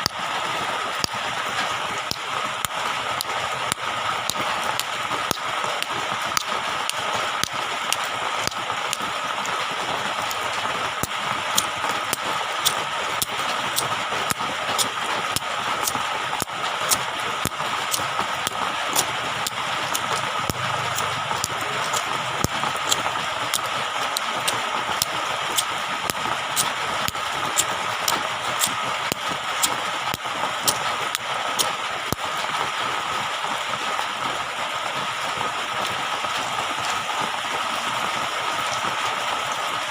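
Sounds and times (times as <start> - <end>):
sharp crackles and pops: 0.0 - 33.1
water hissing: 11.0 - 31.7.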